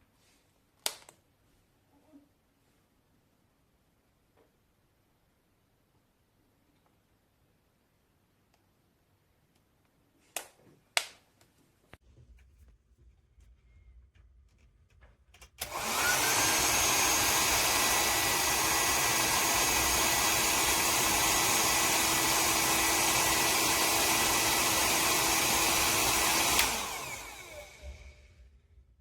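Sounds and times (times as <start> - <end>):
hair dryer blowing with whine: 15.6 - 28.6
hair dryer fan spinning down: 15.6 - 28.6.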